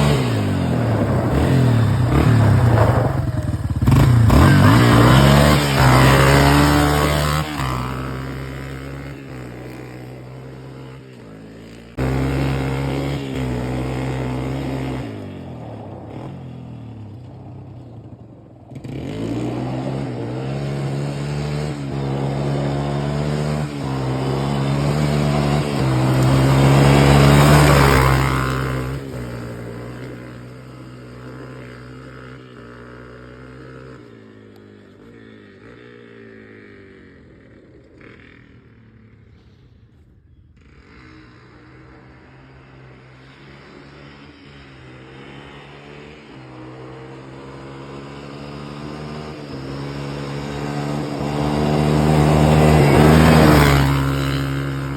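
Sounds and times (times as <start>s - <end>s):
atv engine revving: 0.0s - 40.0s, 40.6s - 54.9s.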